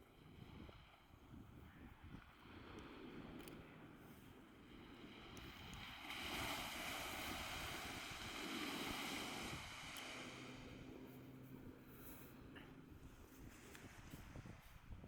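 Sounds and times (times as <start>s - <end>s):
wind buffeting microphone: 0.2s - 11.8s, 12.8s - 15.0s
ocean wave breaking: 5.0s - 11.2s.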